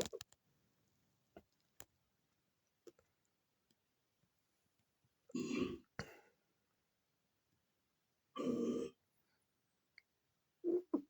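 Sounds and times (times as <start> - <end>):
loud rough burp: 5.4 - 5.9, 8.4 - 9.0.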